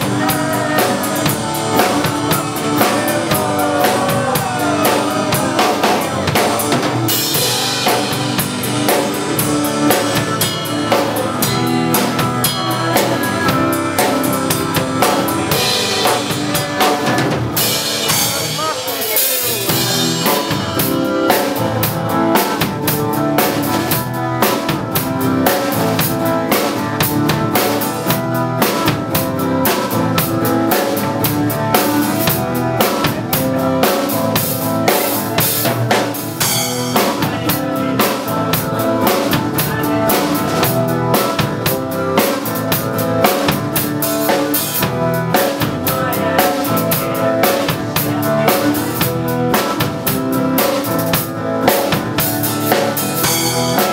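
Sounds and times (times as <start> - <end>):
music with driving drum kit: 0.0 - 53.9.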